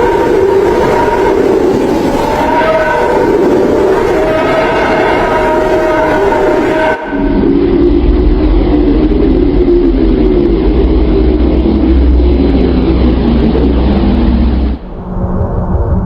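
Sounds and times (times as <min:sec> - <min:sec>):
rumbling space drone: 0:00.0 - 0:16.0
muffled droning tone: 0:05.2 - 0:16.0.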